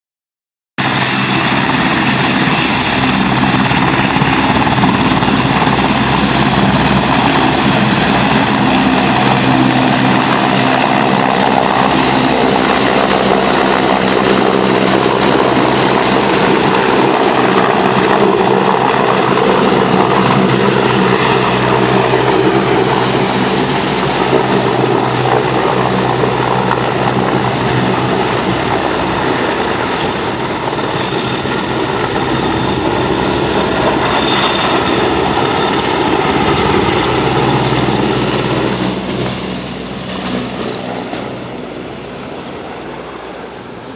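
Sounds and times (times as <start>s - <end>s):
helicopter turbine and rotor: 0.8s - 43.9s.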